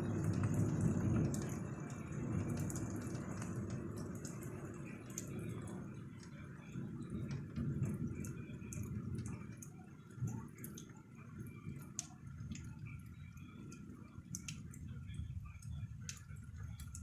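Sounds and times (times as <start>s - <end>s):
low rumble of thunder: 0.0s - 10.6s
raindrops dripping and ticking: 0.0s - 17.0s.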